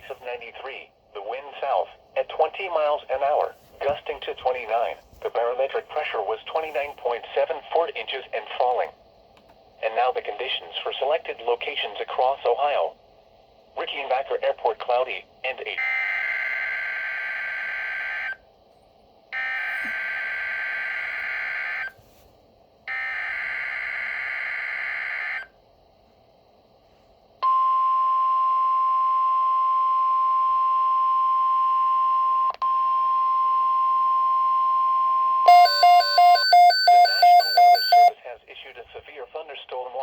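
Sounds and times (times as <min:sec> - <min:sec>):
steady alarm tone: 0:15.8 - 0:18.4, 0:19.4 - 0:22.0, 0:22.9 - 0:25.6, 0:27.4 - 0:38.2
fast electronic beeps: 0:35.5 - 0:38.1.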